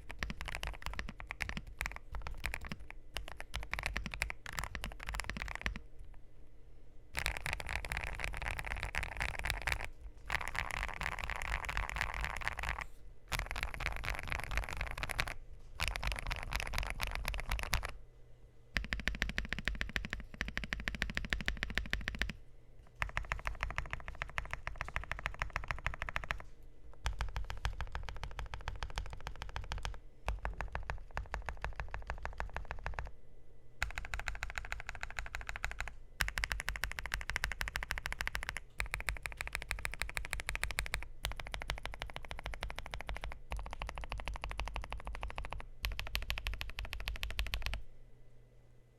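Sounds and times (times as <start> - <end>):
mechanical keyboard typing: 0.0 - 5.8, 7.2 - 18.0, 18.8 - 33.1, 33.8 - 47.8.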